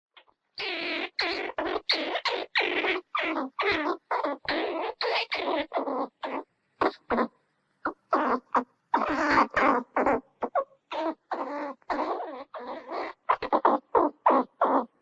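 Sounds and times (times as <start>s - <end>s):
squirrel chattering: 0.6s - 15.0s.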